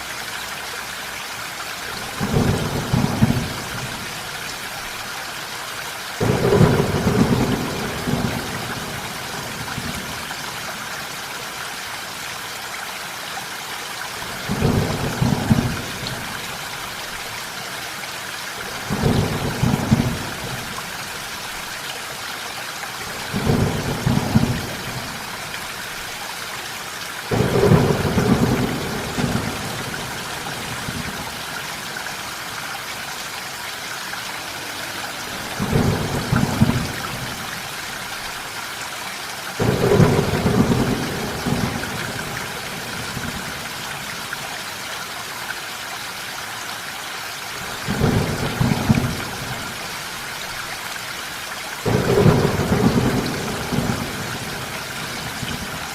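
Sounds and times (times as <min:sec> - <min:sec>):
steady rain: 0:00.0 - 0:55.9
thunder rumbling: 0:06.2 - 0:10.1, 0:27.3 - 0:31.4, 0:34.7 - 0:37.7, 0:39.6 - 0:43.4, 0:51.9 - 0:55.8.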